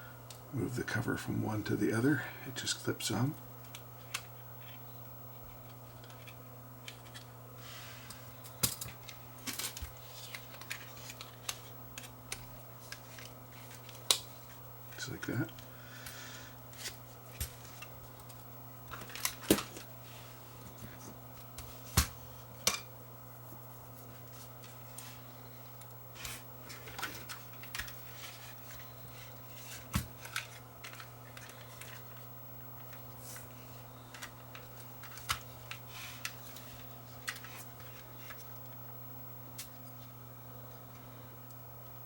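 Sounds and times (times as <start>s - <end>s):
steady low hum: 0.0s - 42.0s
small parts clicking and tapping: 34.0s - 38.4s.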